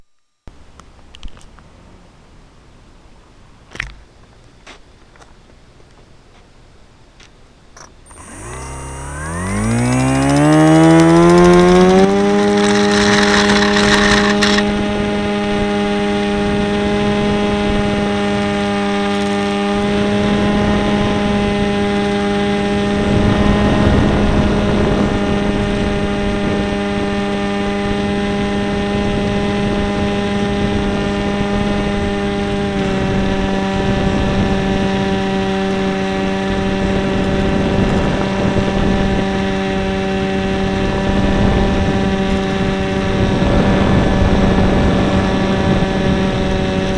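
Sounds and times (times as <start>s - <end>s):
model airplane motor and propeller: 7.8s - 46.9s
wind rushing over microphone: 40.3s - 46.9s.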